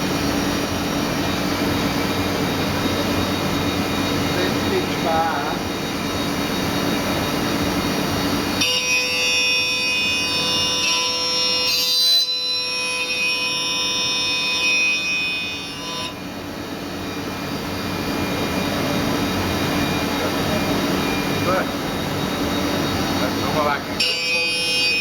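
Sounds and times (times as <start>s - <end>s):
broad steady rushing noise: 0.0s - 8.6s, 16.1s - 24.1s
milling machine high-pitched whine: 0.0s - 25.0s.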